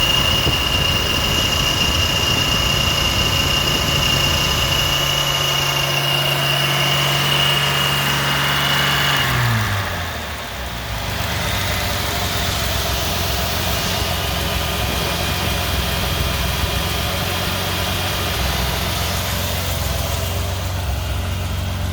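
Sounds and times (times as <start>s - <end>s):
car engine idling: 0.0s - 21.9s.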